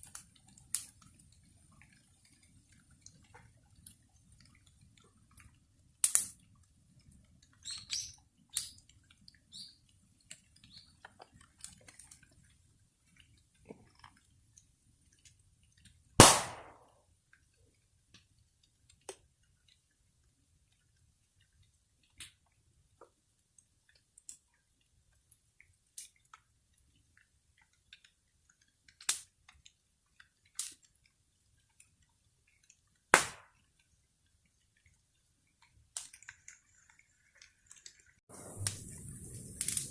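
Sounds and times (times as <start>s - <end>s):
bonfire crackling: 0.0s - 39.9s
faint low rumble: 38.3s - 39.9s.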